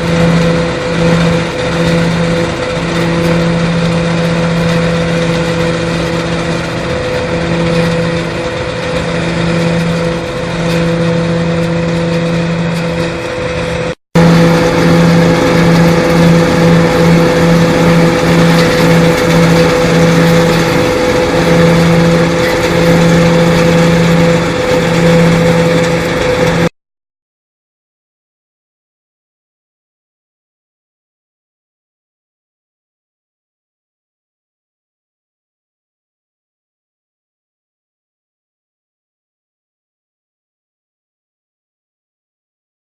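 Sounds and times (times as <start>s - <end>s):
motor humming: 0.0s - 26.7s.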